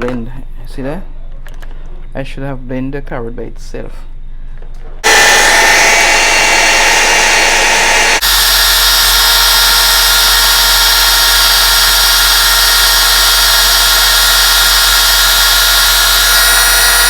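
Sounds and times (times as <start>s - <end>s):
blender motor whining: 5.0s - 17.0s.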